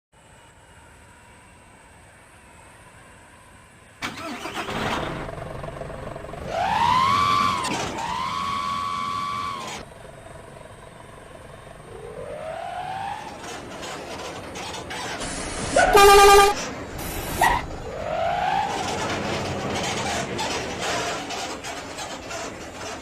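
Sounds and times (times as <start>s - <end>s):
bus engine: 0.2s - 23.0s
faint rising tone: 11.0s - 13.7s
bus horn long high note: 15.8s - 16.7s.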